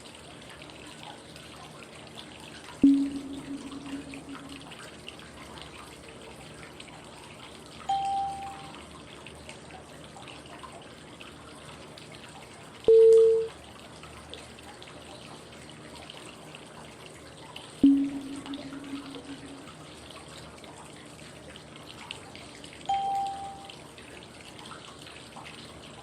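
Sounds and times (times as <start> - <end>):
loud low cue tone: 2.8 - 4.8, 17.8 - 19.8
soft high cue tone: 2.8 - 4.8, 7.9 - 8.8, 12.9 - 13.5, 17.8 - 19.9, 22.9 - 23.8
flowing water white noise: 7.9 - 8.8, 22.8 - 23.9.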